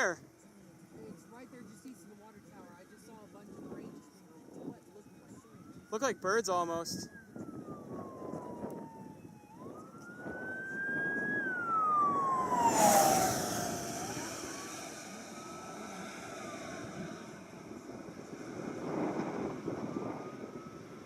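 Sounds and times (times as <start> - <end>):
siren wailing: 2.5 - 21.0
rushing noise: 11.2 - 18.2.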